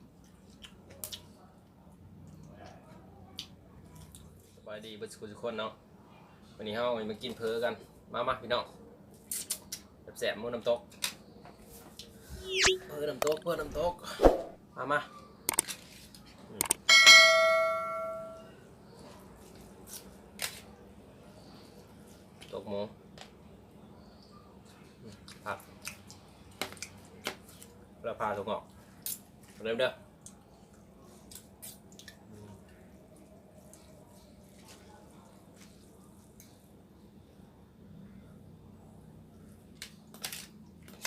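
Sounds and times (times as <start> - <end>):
small sharp clicks: 15.5 - 15.8, 16.6 - 16.8
tableware struck and ringing: 16.8 - 18.5.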